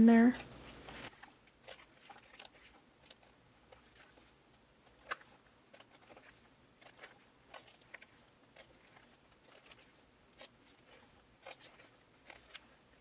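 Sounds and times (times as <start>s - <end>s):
pages being flipped: 0.4s - 12.8s.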